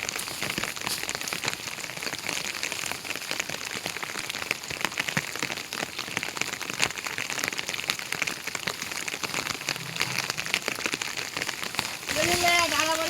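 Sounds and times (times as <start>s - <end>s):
heavy rain falling: 0.0s - 13.0s.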